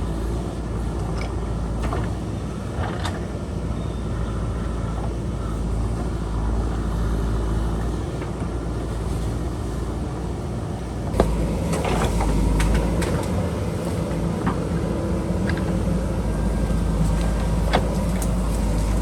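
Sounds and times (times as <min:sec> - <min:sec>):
diesel engine running: 0:00.0 - 0:19.0
digging knocks and clatter: 0:11.2 - 0:19.0.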